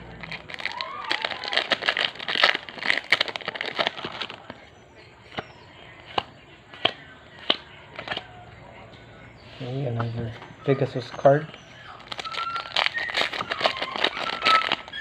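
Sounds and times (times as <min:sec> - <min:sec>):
foil wrapper tearing and crinkling: 0:00.1 - 0:04.6, 0:12.0 - 0:15.0
cards clicking: 0:05.3 - 0:08.3.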